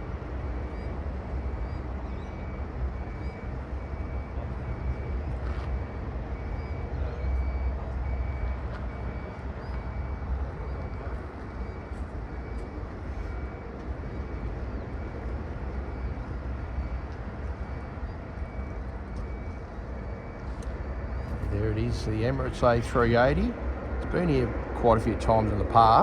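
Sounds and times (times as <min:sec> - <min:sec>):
distant jet engines rumbling: 0:00.0 - 0:26.0
wind: 0:00.0 - 0:26.0
faint bird chirps: 0:01.6 - 0:02.6.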